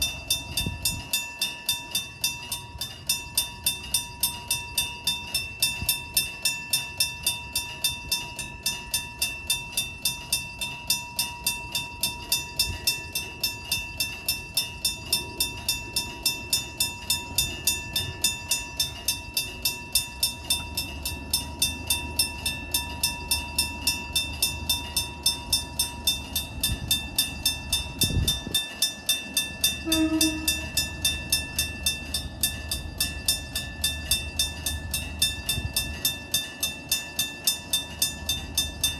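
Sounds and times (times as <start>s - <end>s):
level crossing bell clanging: 0.0s - 38.9s
train rumbling past: 0.0s - 38.9s
train horn blast: 29.8s - 31.0s.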